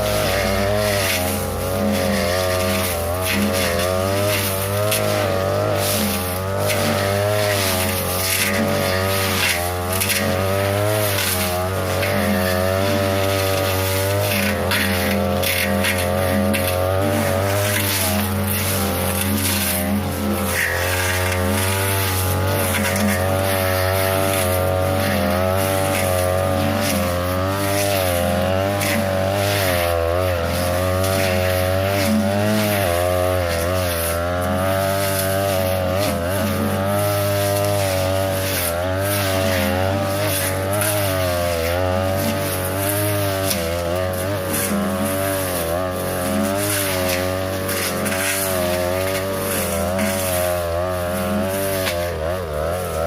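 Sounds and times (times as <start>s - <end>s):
brush cutter cutting grass: 0.0s - 53.0s.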